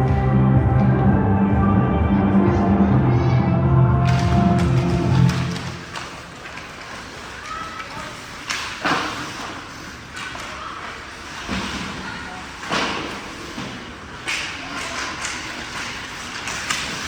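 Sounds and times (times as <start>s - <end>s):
hockey sticks and puck knocking: 12.6s - 17.0s.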